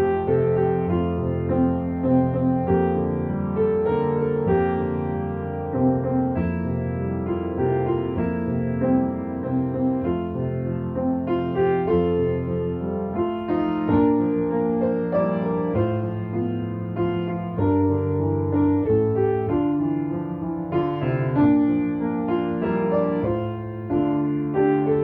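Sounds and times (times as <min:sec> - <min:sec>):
piano chords: 0:00.0 - 0:25.0.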